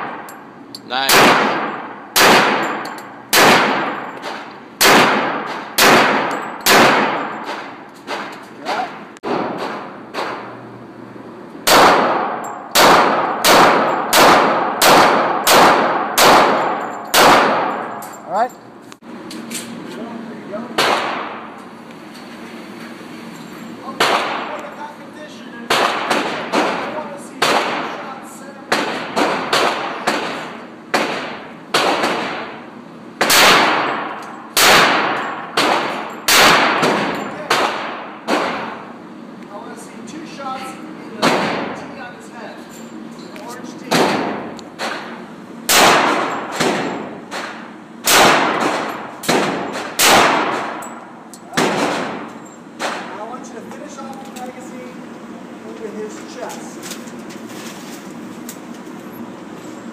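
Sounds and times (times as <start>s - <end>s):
handgun shots: 1.0s - 10.5s, 11.7s - 17.9s, 28.7s - 32.5s, 33.2s - 38.8s, 43.9s - 50.9s, 51.5s - 53.1s.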